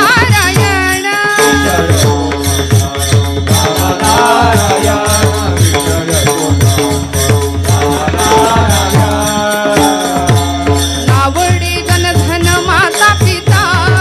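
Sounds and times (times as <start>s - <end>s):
drum beat: 0.0s - 14.0s
jingling hand cymbals: 0.0s - 14.0s.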